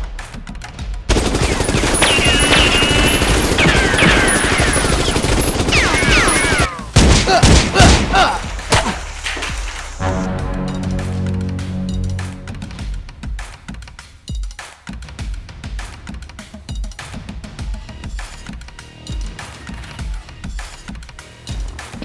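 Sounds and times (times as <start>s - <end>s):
rapid automatic gunfire: 1.1s - 9.7s
separate gunshots: 1.1s - 12.7s
falling whines: 1.6s - 6.9s.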